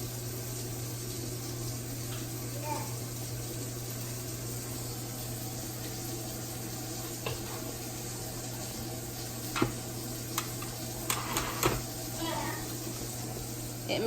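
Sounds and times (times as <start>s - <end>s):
steady cooking hiss: 0.0s - 14.0s.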